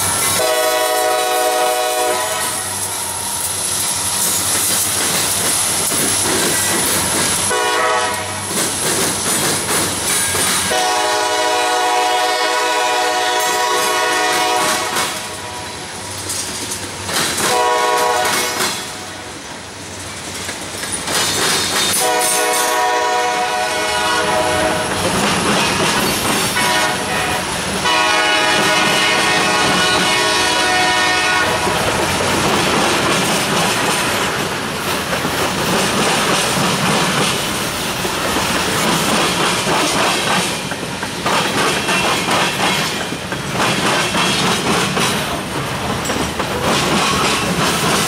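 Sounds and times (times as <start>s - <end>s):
locomotive horn blasts: 0.3s - 2.7s, 7.5s - 8.4s, 10.7s - 15.7s, 17.5s - 18.6s, 22.0s - 24.9s, 26.6s - 31.8s.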